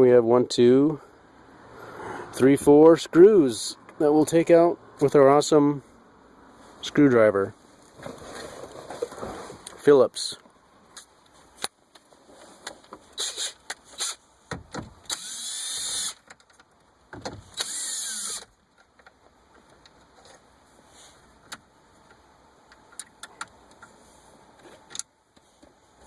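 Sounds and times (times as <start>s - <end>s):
electric screwdriver motor whirring: 15.1s - 16.2s, 17.6s - 18.5s.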